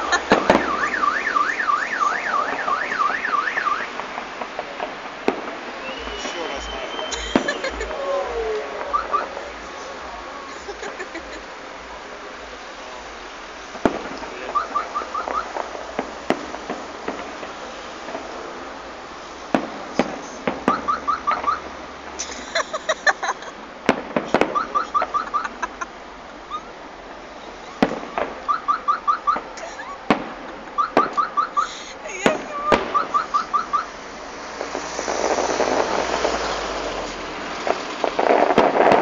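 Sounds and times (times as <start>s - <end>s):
firework shells bursting: 0.0s - 1.1s, 3.9s - 8.0s, 34.5s - 39.0s
high firework chirps: 0.0s - 12.1s, 13.6s - 25.9s, 30.1s - 39.0s.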